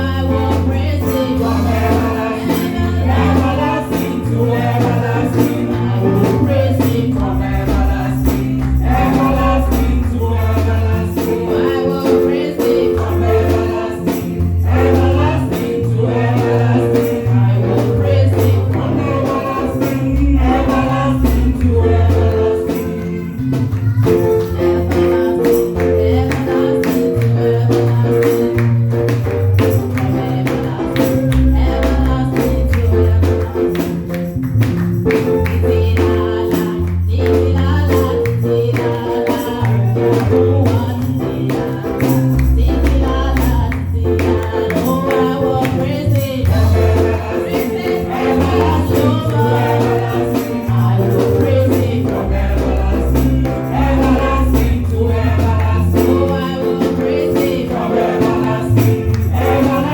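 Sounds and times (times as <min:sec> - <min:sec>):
bass line: 0:00.0 - 0:11.6
church band playing gospel music: 0:00.0 - 0:59.9
steady percussion: 0:00.0 - 0:59.9.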